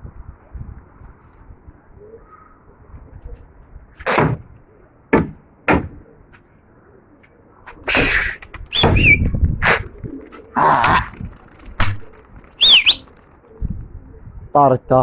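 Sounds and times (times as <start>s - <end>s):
pigeon wing claps: 7.7s - 13.6s
pigeon wings flapping: 7.7s - 13.9s.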